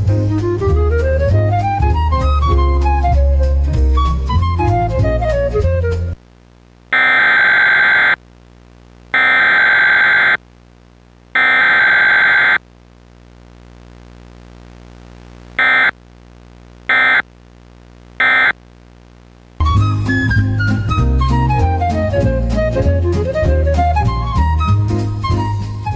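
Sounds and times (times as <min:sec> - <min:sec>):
music: 0:00.0 - 0:06.2, 0:19.6 - 0:25.9
alert data bursts: 0:06.9 - 0:08.2, 0:09.2 - 0:10.4, 0:11.4 - 0:12.6, 0:15.6 - 0:16.0, 0:16.9 - 0:17.3, 0:18.2 - 0:18.6.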